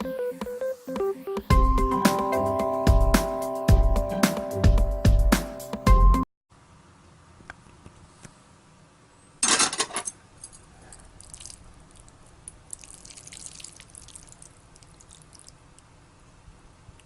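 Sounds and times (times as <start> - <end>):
water dripping: 11.2 - 15.9.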